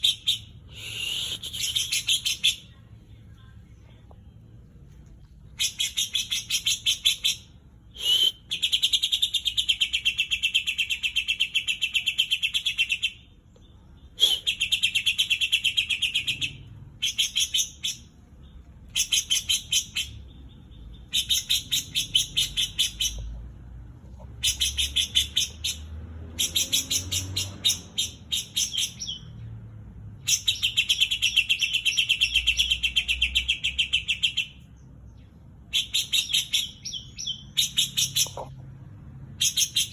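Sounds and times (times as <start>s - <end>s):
bird singing trilled notes: 30.2s - 38.5s.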